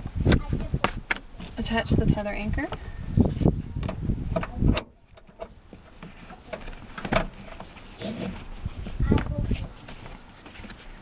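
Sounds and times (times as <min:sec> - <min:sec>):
strap rustling and thumps: 0:03.3 - 0:10.9.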